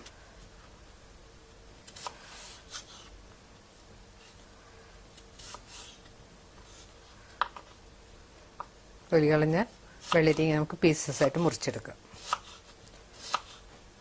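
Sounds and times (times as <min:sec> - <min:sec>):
knife peeling cucumber: 0:01.8 - 0:03.1, 0:05.2 - 0:06.0, 0:10.0 - 0:10.5, 0:12.2 - 0:13.7.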